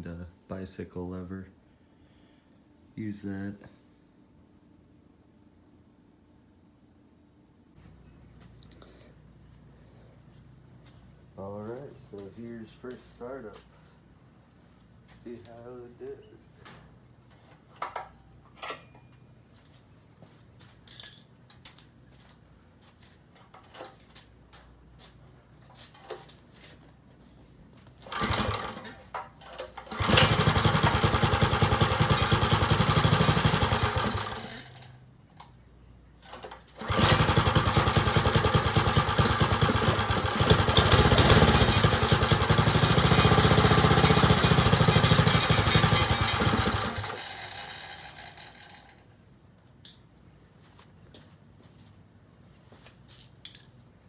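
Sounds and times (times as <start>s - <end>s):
single-cylinder engine running: 28.0s - 35.0s, 36.3s - 48.9s.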